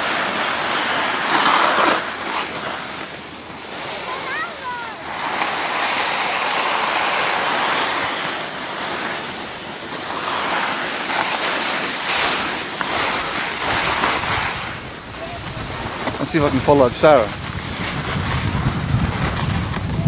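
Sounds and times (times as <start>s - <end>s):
skis scraping over snow: 0.0s - 20.0s
wind on microphone: 12.9s - 20.0s.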